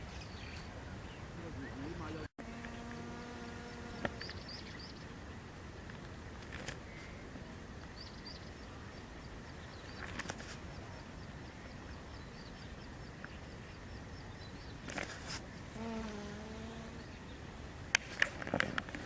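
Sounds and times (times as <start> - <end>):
steady outdoor hiss: 0.0 - 19.0
small bird chirping: 0.1 - 5.2
brief rustles: 9.9 - 10.8, 14.9 - 15.7, 18.0 - 19.0.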